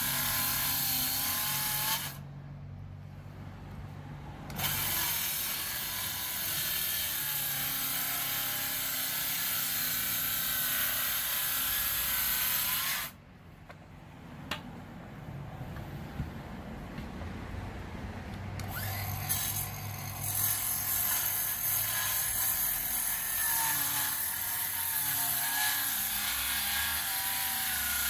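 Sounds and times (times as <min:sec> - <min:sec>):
circular saw cutting wood: 0:00.0 - 0:02.2, 0:04.5 - 0:13.2, 0:18.6 - 0:28.0.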